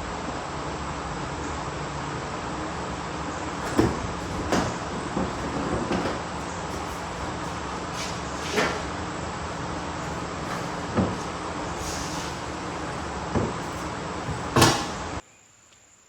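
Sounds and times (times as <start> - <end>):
knocks and clunks: 2.6 - 15.2.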